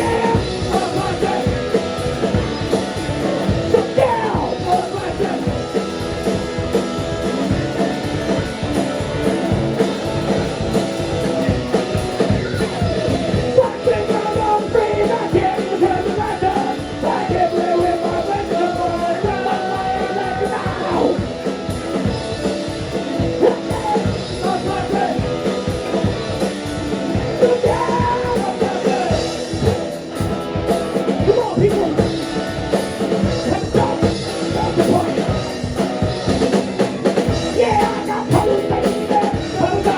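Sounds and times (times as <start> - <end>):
person singing: 0.0 - 2.4, 3.2 - 5.9, 12.9 - 21.3, 23.2 - 25.6, 27.1 - 29.9, 31.2 - 32.2, 33.2 - 35.6, 37.4 - 39.9
bass: 0.0 - 39.9
distorted guitars: 0.0 - 39.9
drum kit: 0.0 - 39.9.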